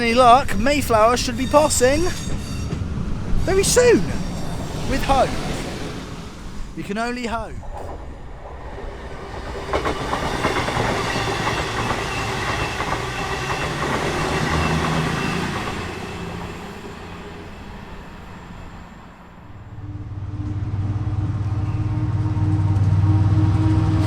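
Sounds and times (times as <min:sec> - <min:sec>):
train wheels clattering: 0:00.0 - 0:06.8, 0:07.6 - 0:17.6.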